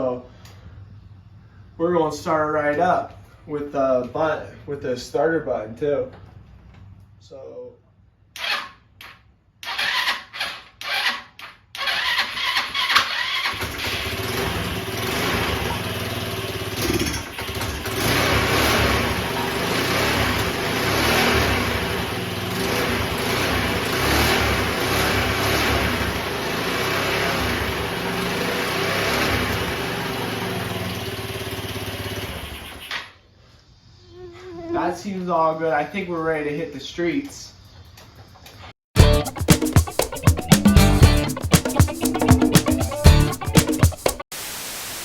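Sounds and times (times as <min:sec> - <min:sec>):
scooter engine cranking: 0:08.4 - 0:33.0
scooter engine running: 0:11.8 - 0:32.9, 0:39.0 - 0:44.2.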